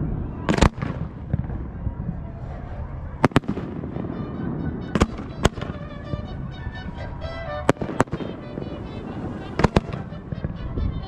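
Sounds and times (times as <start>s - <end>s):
fireworks bangs: 0.0s - 11.0s
mariachi music: 3.1s - 11.0s.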